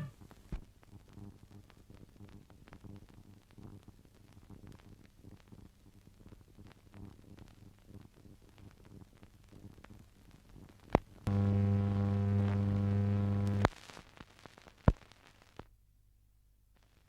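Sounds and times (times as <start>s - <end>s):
tape hiss: 0.0s - 15.7s, 16.7s - 17.0s
buzzy mains hum: 11.3s - 13.7s.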